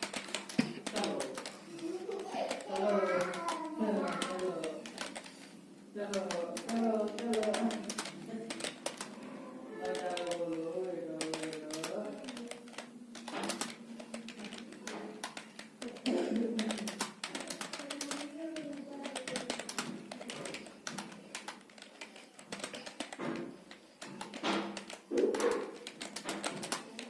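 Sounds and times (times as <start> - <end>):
computer keyboard typing: 0.0 - 27.0.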